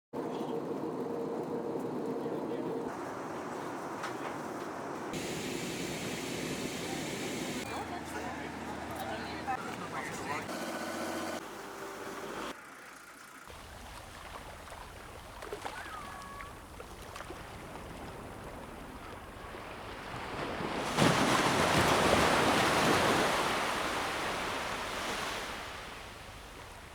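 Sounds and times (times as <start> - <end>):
sea waves washing on shore: 2.9 - 7.7, 13.5 - 26.9.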